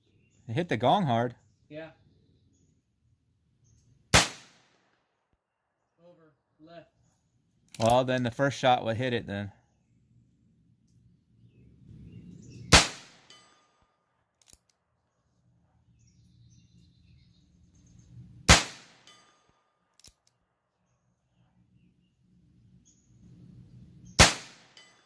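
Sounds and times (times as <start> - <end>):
revolver gunshots: 4.1 - 5.0, 12.7 - 13.4, 18.5 - 19.2, 24.2 - 24.8.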